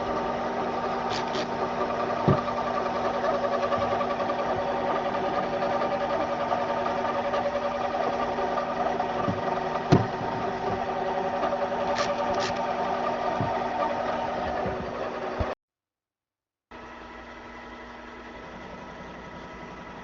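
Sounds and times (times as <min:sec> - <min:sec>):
metal lathe humming: 0:00.0 - 0:15.6.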